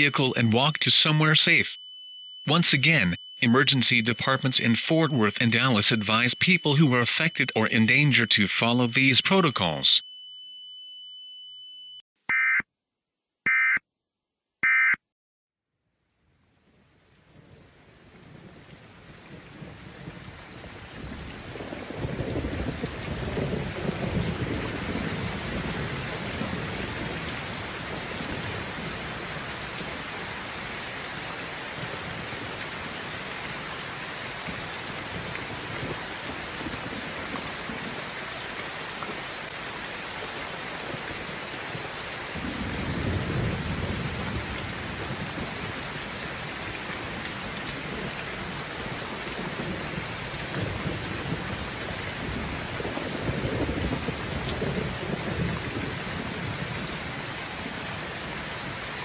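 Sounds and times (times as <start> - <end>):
steady rain: 16.3 - 59.0
thunder rumbling: 17.3 - 38.2, 40.5 - 59.0.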